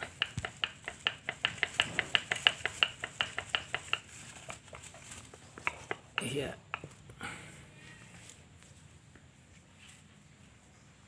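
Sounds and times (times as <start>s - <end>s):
rapid even clicking of brush: 0.0s - 7.1s.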